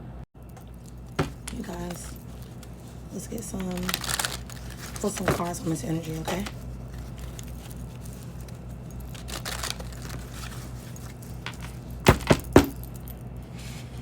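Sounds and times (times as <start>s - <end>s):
low steady hum: 0.0s - 14.0s
cards shuffled with rustle: 0.6s - 12.3s.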